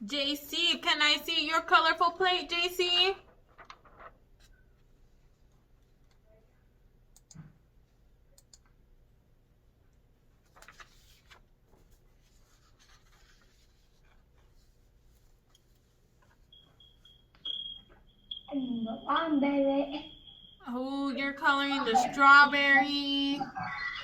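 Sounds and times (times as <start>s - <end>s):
soft clicks: 7.1s - 7.5s, 8.3s - 8.8s.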